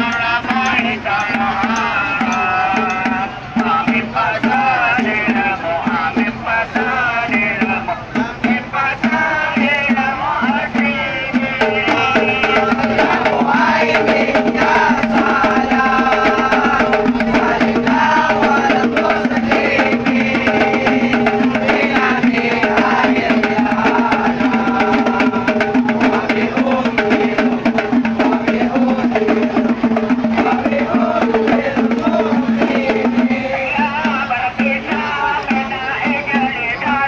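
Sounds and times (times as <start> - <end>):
lively music with fast percussion: 0.0 - 37.0.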